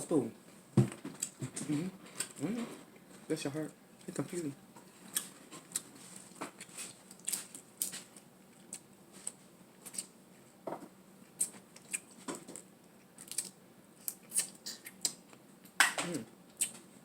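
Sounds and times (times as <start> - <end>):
wet mouth clicks and smacks: 14.1 - 15.2.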